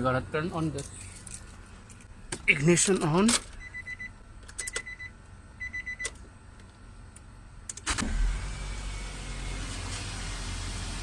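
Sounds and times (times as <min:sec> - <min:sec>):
dashboard warning chime beeping: 0:03.6 - 0:06.2
ignition key clicks: 0:04.4 - 0:05.0
car engine starting and idling: 0:07.6 - 0:11.0.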